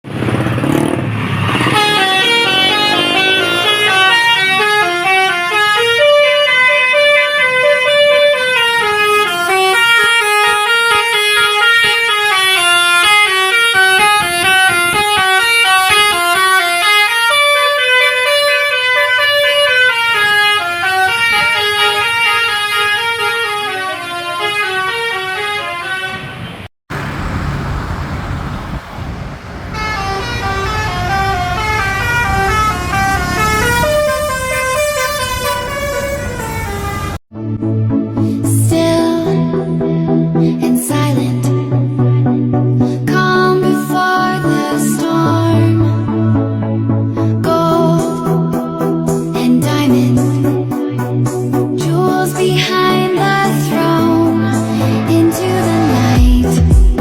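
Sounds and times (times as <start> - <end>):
bus air horn playing a tune: 1.5 - 27.5, 29.7 - 37.2, 52.9 - 56.6
rumbling noise: 26.9 - 29.9.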